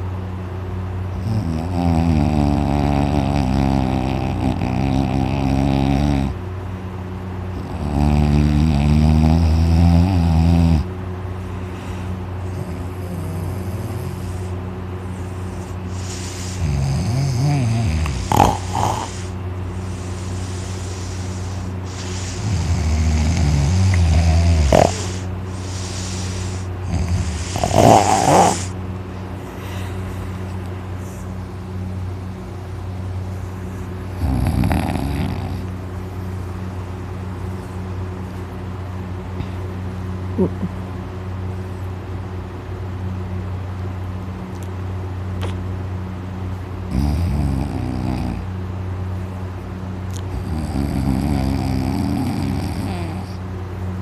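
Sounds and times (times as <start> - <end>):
man snoring: 1.2 - 6.4, 7.6 - 10.9, 12.5 - 14.5, 15.2 - 28.8, 34.2 - 35.7, 46.9 - 48.5, 50.4 - 53.4.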